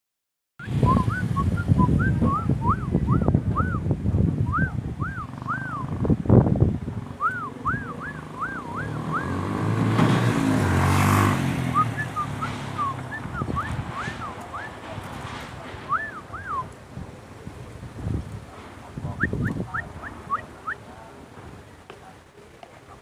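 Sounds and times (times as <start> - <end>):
birds whistling calls: 0.6 - 6.0, 7.2 - 9.7, 11.6 - 15.1, 15.8 - 16.7, 19.0 - 20.8
vehicle passing engine rumble: 0.6 - 21.9.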